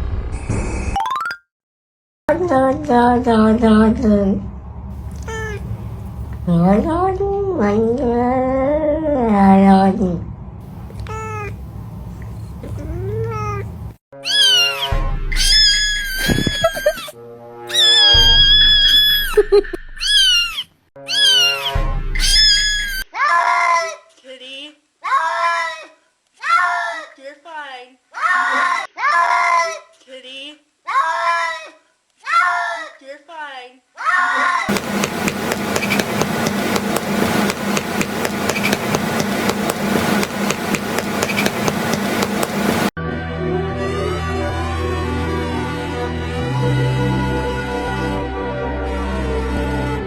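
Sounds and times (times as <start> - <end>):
steady low hum: 4.9 - 7.0, 10.6 - 14.0, 34.7 - 43.0
cat meowing: 5.1 - 5.8
music: 17.2 - 17.7, 43.0 - 50.0
rapid knocking strikes: 34.7 - 42.9.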